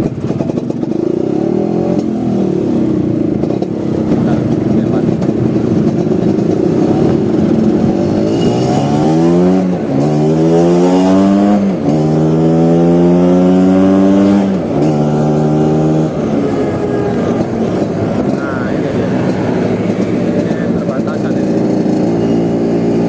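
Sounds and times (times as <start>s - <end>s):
scooter engine accelerating: 0.0s - 23.0s.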